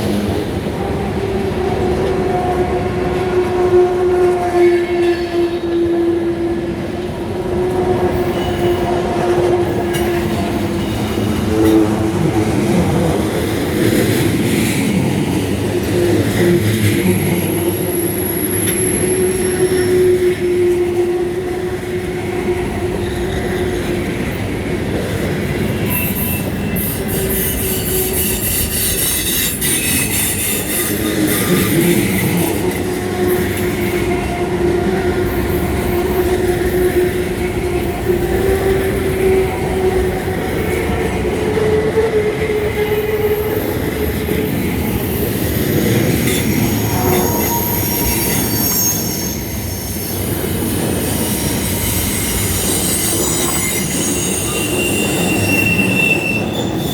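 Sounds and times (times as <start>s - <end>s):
rumble of wheels on rail: 0.0s - 56.9s
train wheels squealing: 0.0s - 56.9s.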